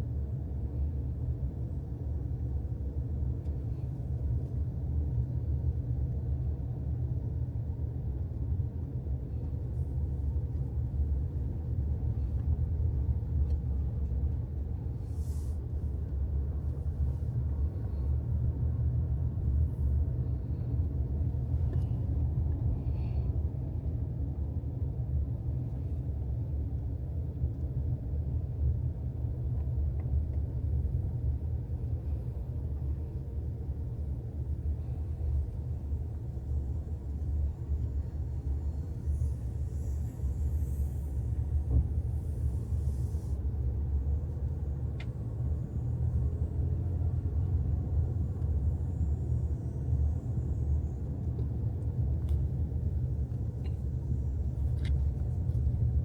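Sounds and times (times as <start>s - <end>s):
steady low rumble: 0.0s - 56.0s.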